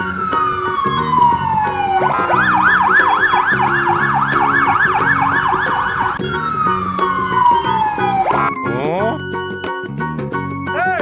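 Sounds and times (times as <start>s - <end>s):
fast warbling siren: 0.0s - 8.8s
light children's music: 0.0s - 11.0s.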